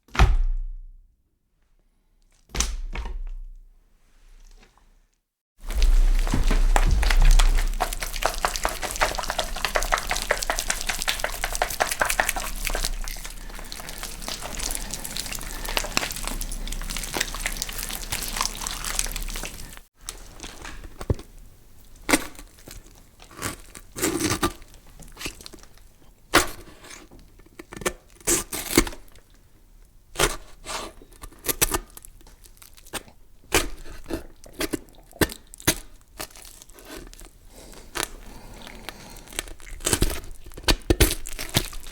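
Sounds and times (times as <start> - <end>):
wet crackling rattle: 5.6 - 20.9
knife carving wet meat: 5.7 - 19.8.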